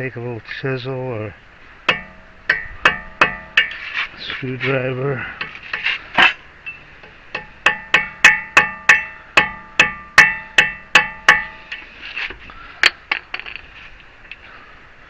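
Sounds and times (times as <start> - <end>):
hammer striking metal chisel: 1.9 - 3.8, 5.7 - 11.8.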